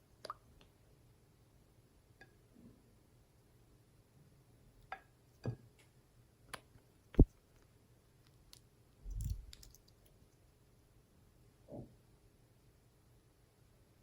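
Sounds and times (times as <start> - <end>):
slime squelch: 9.0 - 10.2.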